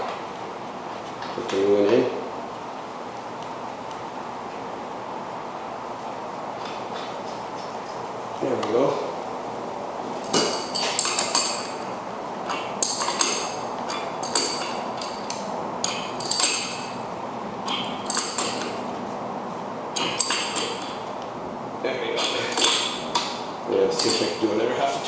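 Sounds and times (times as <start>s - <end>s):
wrench clinking and scraping: 10.2s - 17.0s, 17.7s - 18.8s, 20.0s - 21.0s, 22.2s - 24.5s.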